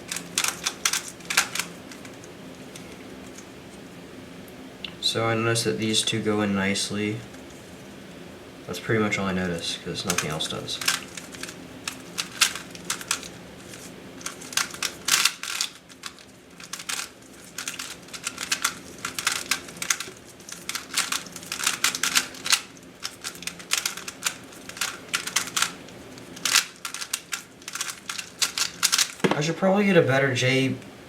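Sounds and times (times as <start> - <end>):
puzzle cube clicking: 0.1 - 2.1, 10.1 - 29.3.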